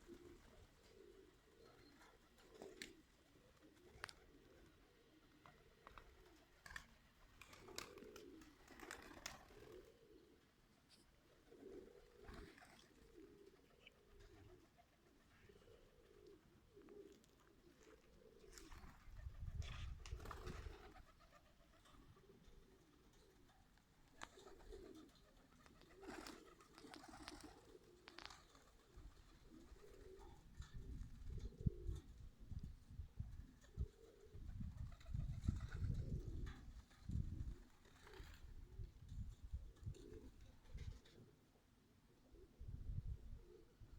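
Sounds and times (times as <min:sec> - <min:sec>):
pigeons cooing softly: 0:00.0 - 0:43.9
clicks and rustles: 0:25.6 - 0:28.7.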